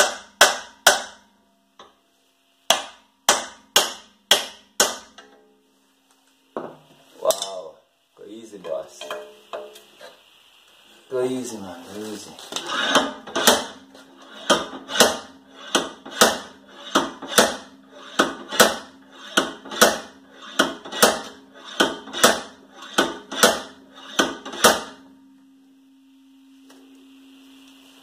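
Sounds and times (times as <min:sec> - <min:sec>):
hammer blows on wheel hub: 0:13.1 - 0:25.1.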